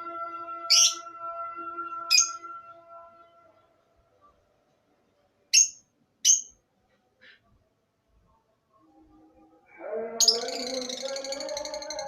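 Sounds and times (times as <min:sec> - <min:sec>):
bird chirping: 0:00.7 - 0:01.1, 0:05.5 - 0:06.6, 0:09.9 - 0:12.0.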